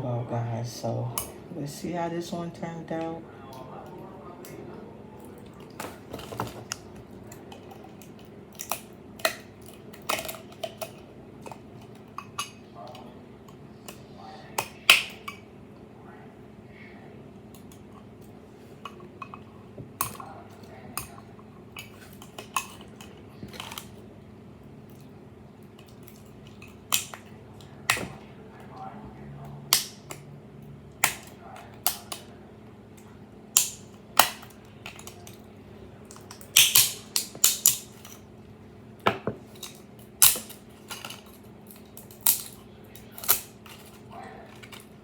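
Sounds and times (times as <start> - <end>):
low steady hum: 0.0 - 45.0.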